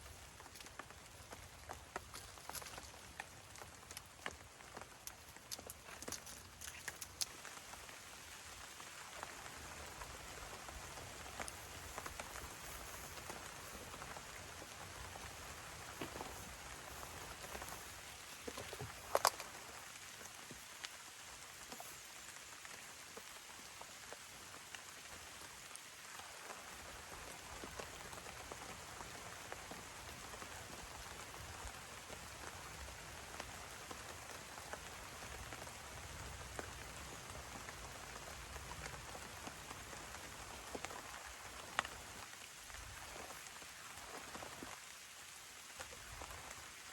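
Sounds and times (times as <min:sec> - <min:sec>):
steady rain falling: 0:00.0 - 0:46.9.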